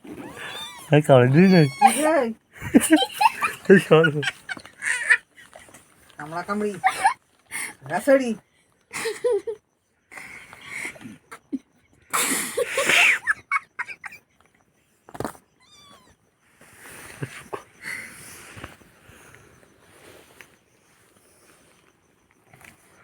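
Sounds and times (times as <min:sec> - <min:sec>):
cat meowing: 0:00.0 - 0:02.2, 0:15.6 - 0:16.2.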